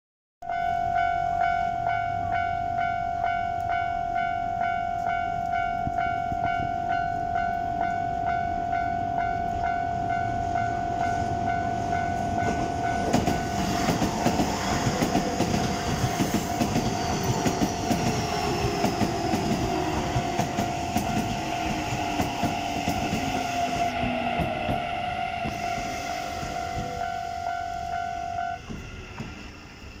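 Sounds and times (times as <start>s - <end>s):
level crossing alarm pulsing tone: 0.4s - 30.0s
train motors whining: 11.8s - 30.0s
train wheels clattering over rails: 12.4s - 27.0s, 28.6s - 30.0s.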